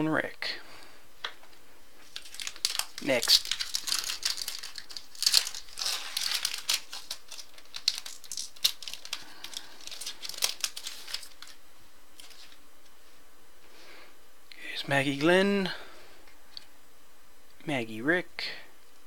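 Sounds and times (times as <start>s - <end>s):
wrapper crinkling and tearing: 2.0s - 12.6s.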